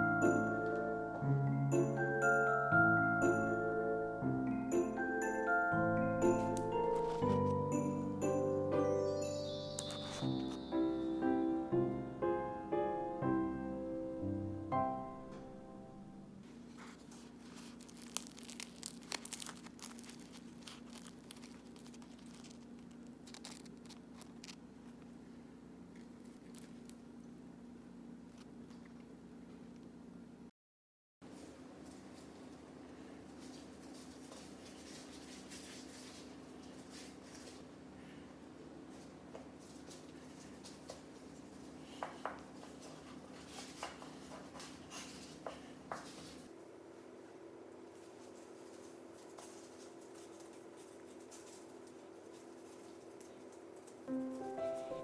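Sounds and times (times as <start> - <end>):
crinkling and tearing: 16.5 - 25.2, 25.9 - 27.1.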